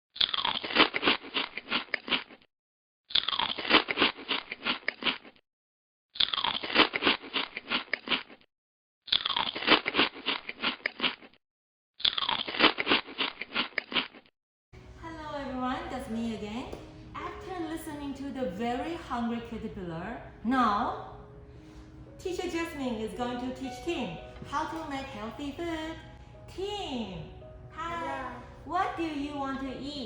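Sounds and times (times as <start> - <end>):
cartoon munching crunches: 0.2 - 2.5, 3.1 - 5.4, 6.2 - 8.5, 9.1 - 11.4, 12.0 - 14.3.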